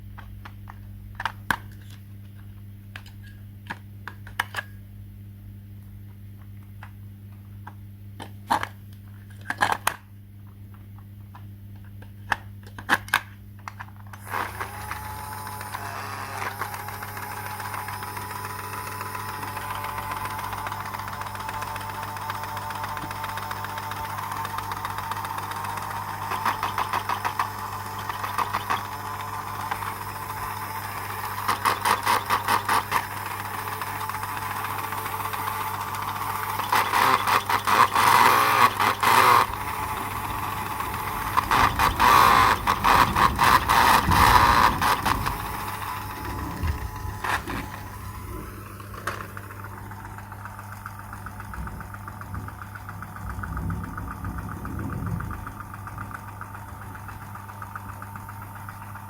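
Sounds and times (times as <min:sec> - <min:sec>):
small motor humming: 0:14.1 - 0:59.0
fast rattling clicks: 0:16.4 - 0:59.0.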